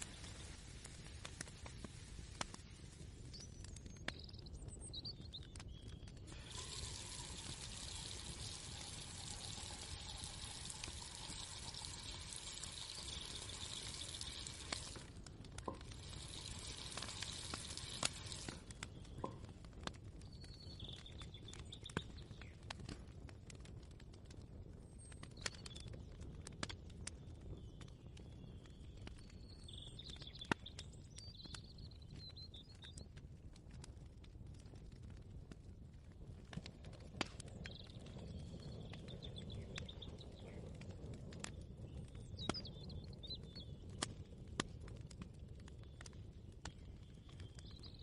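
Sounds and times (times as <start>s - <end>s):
steady hiss: 6.3s - 15.0s.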